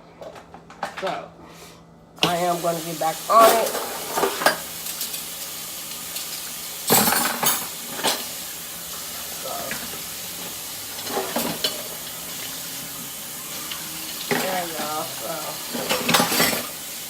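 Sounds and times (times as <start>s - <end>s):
dishes and cutlery clattering: 3.4s - 5.2s, 6.9s - 8.3s, 11.0s - 11.9s, 14.2s - 15.0s, 15.7s - 16.8s.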